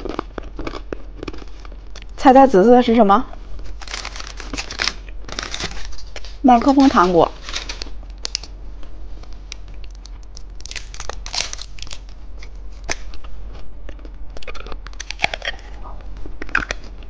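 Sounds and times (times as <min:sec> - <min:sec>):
plastic packaging tearing and crinkling: 0:03.7 - 0:08.5, 0:09.8 - 0:13.2, 0:14.4 - 0:15.8
sharp clicks and crackles: 0:09.5 - 0:12.2, 0:13.9 - 0:15.6.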